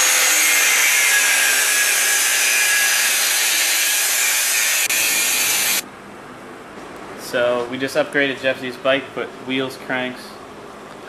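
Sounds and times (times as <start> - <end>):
power tool whirring: 0.0 - 5.8.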